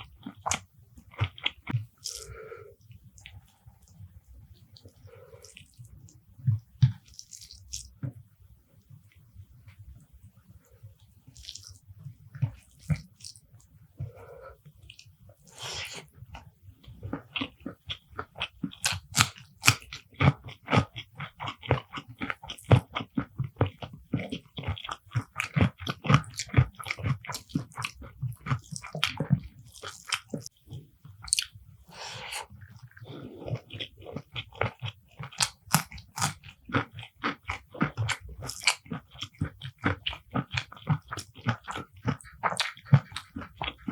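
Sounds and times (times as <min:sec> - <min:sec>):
person crunching and chewing: 0:00.0 - 0:02.5, 0:06.9 - 0:08.0, 0:11.3 - 0:43.9.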